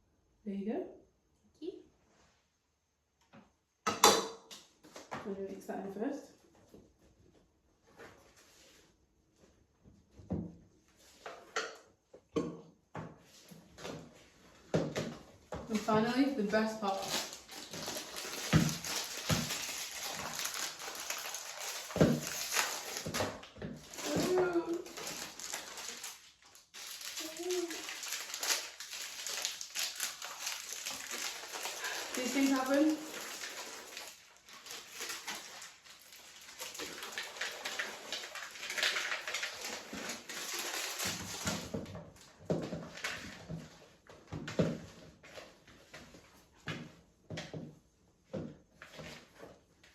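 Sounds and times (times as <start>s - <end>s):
chocolate chips pattering into bowl: 16.8s - 41.6s.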